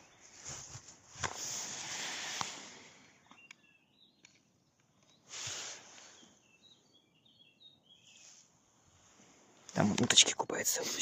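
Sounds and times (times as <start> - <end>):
small birds chirping: 0.0 - 11.0
brief hiss of noise: 5.3 - 6.2.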